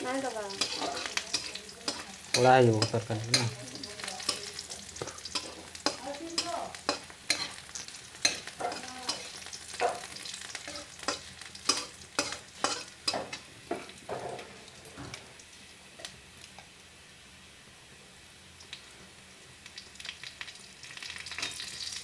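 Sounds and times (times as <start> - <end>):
vegetables sizzling in a pan: 0.0 - 22.0
spatula scraping a pan: 0.1 - 14.5.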